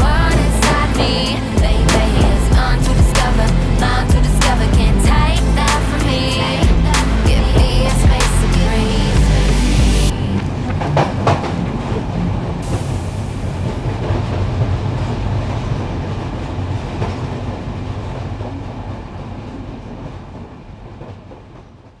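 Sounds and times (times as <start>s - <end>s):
freight train on tracks: 0.0s - 22.0s.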